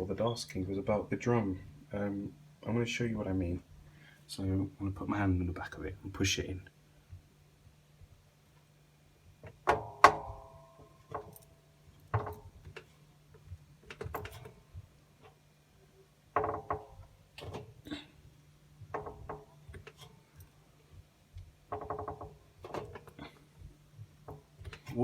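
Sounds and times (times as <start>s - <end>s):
washing machine drum clunking: 9.6s - 11.4s.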